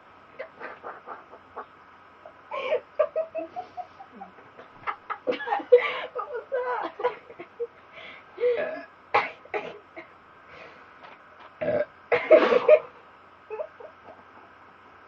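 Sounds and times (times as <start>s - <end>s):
woman burping: 8.5s - 8.9s, 11.6s - 12.8s.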